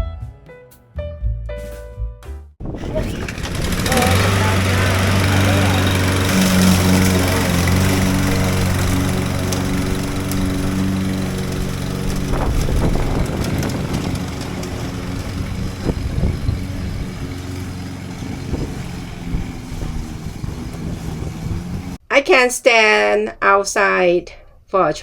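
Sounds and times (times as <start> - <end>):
lawn mower engine running: 2.6 - 22.0
wind noise: 2.6 - 22.0.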